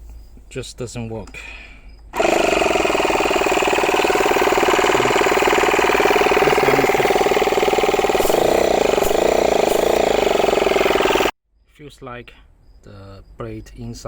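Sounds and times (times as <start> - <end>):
air compressor pulsing chatter: 2.2 - 11.3.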